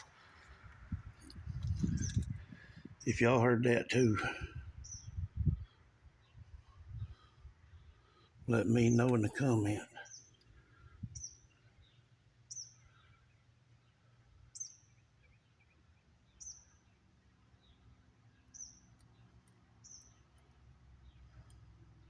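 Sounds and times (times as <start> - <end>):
small bird chirping: 1.2 - 3.1, 4.8 - 7.0, 10.0 - 21.6.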